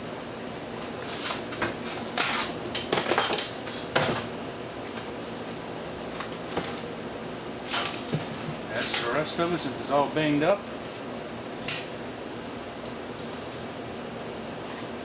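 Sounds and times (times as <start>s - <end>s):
fan parts clattering: 0.8s - 6.9s, 7.6s - 10.0s.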